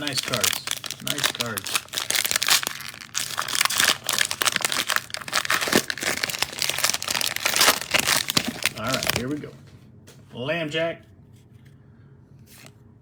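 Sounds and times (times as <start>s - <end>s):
cellophane wrapper crinkling and tearing: 0.0s - 9.6s.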